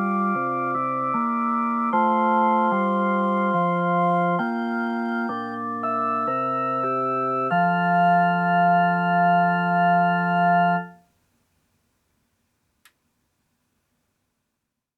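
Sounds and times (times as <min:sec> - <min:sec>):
electronic keyboard chime chord: 0:00.0 - 0:11.0
faint click: 0:12.8 - 0:13.0.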